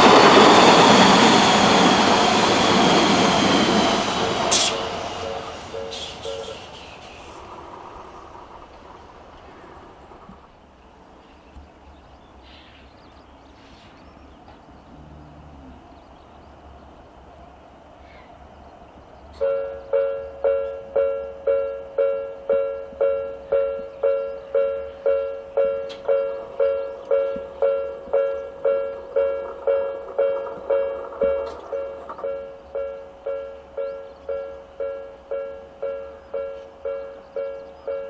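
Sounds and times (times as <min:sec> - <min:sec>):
level crossing warning bell: 0:05.2 - 0:06.7, 0:19.4 - 0:38.0.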